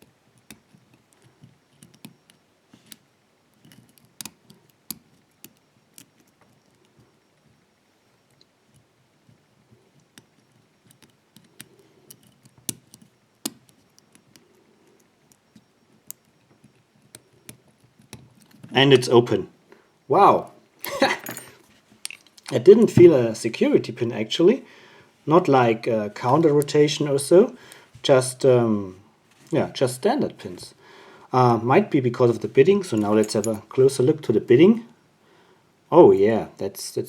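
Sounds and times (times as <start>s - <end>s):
lock pick clicking and scraping: 0.0s - 7.6s, 8.2s - 18.8s.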